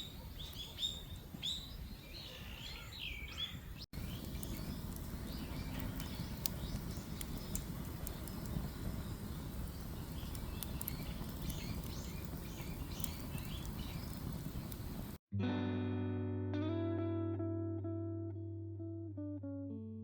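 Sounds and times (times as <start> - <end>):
birds chirping: 0.0 - 15.2
campfire crackling: 3.8 - 15.2
low outdoor rumble: 4.0 - 15.2
plucked guitar music: 15.3 - 20.0.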